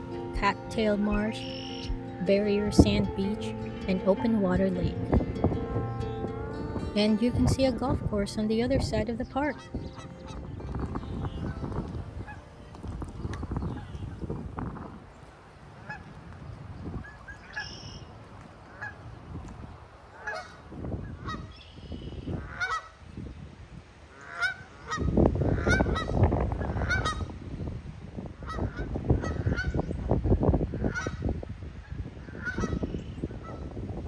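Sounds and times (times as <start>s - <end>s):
geese honking: 0.0s - 15.0s, 20.2s - 20.6s, 21.2s - 21.6s, 22.3s - 23.0s, 24.1s - 27.3s, 28.4s - 29.8s, 30.8s - 33.7s
low rumbling noise: 0.0s - 15.2s.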